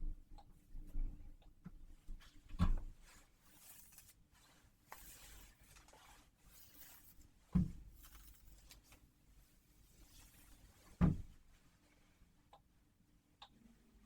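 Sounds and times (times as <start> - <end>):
soft rustling: 1.9 - 12.3.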